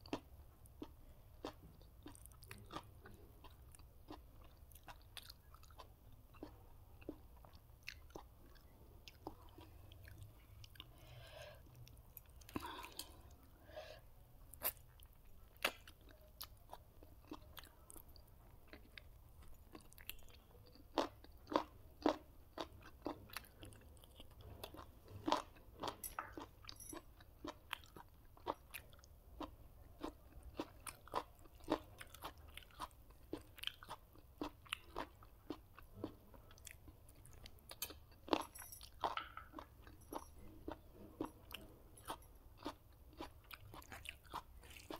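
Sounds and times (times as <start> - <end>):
food crunching: 0.0 - 10.9, 14.5 - 44.9.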